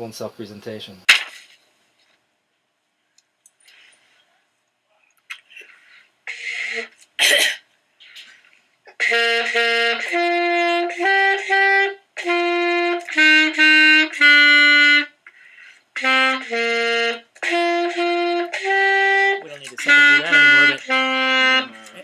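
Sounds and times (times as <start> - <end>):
saxophone short notes: 9.0 - 15.1, 16.0 - 22.0.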